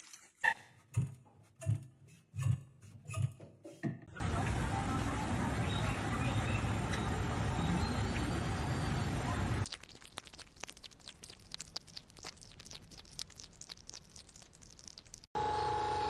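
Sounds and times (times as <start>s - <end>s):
animal chewing crunches: 9.6s - 15.3s.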